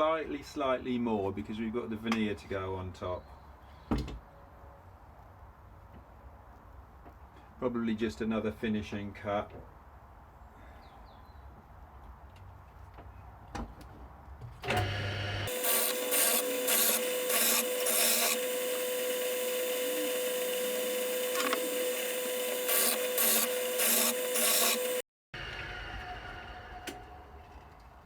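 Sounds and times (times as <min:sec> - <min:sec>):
woodworking machine humming: 0:14.6 - 0:27.4
machine cutting surges: 0:15.5 - 0:25.0.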